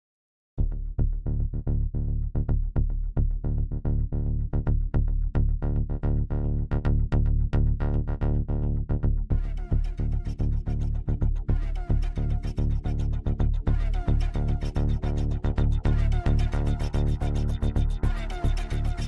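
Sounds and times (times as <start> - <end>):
electronic music with heavy bass: 9.3 - 19.0.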